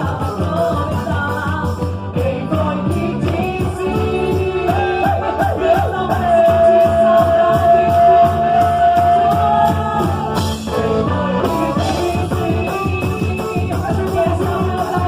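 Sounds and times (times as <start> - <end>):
folk dance music with steady beat: 0.0 - 15.0.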